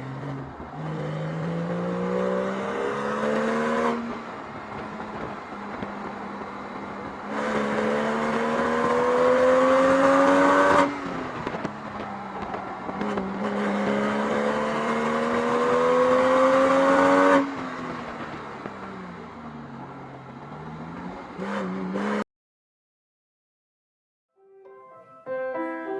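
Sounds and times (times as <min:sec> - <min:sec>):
car engine accelerating: 0:07.3 - 0:17.5.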